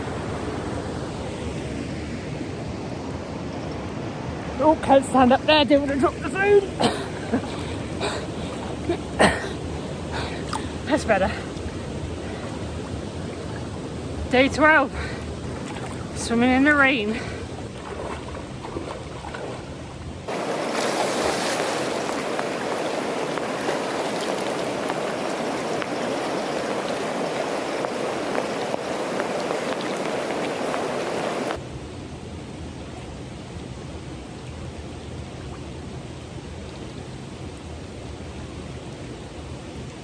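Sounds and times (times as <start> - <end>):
river water rushing over rocks: 0.0 - 31.7
hiss of water and rain: 0.0 - 40.0.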